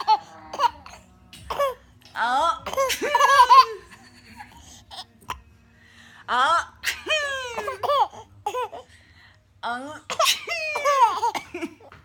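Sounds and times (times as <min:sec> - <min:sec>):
babies laughing: 0:00.0 - 0:01.8, 0:02.7 - 0:04.7.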